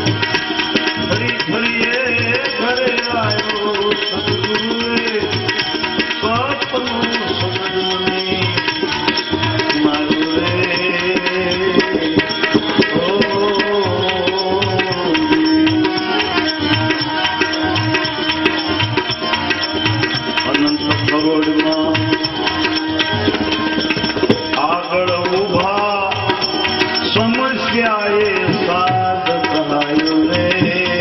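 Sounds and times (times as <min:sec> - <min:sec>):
tabla beat: 0:00.0 - 0:31.0.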